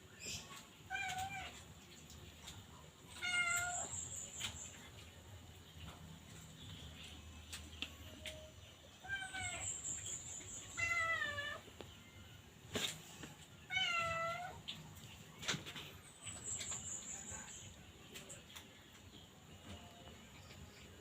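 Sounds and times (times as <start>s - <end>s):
cat meowing: 3.2s - 3.9s, 10.8s - 11.6s, 13.7s - 14.6s.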